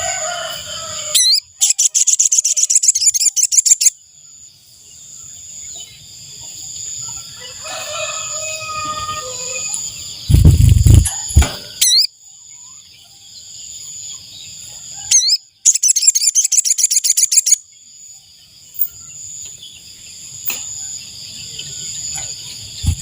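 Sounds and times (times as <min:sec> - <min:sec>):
bird call trill: 0:00.0 - 0:04.0, 0:11.1 - 0:12.8, 0:15.0 - 0:17.6
high insect buzz: 0:06.8 - 0:12.1
loud thump: 0:10.3 - 0:11.8.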